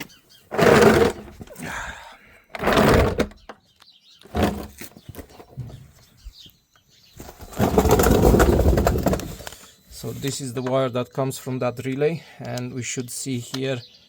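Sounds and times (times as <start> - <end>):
scraping and knocking under a van: 0.5 - 1.6, 2.6 - 3.6, 4.3 - 5.8, 7.2 - 9.5.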